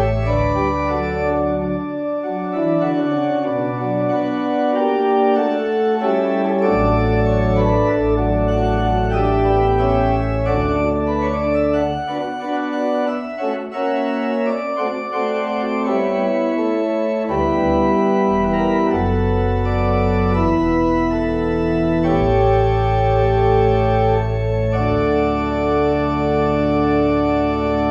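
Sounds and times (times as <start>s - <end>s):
deep organ pedal notes: 0.0s - 27.9s
organ chords: 0.0s - 27.9s.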